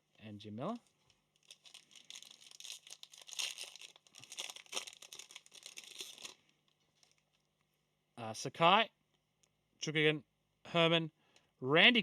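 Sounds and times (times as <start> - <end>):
card pack wrapper crinkling and tearing: 1.0 - 7.3.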